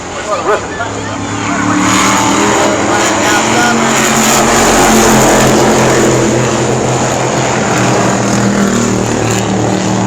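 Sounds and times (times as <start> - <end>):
race car engines droning: 0.0 - 10.0.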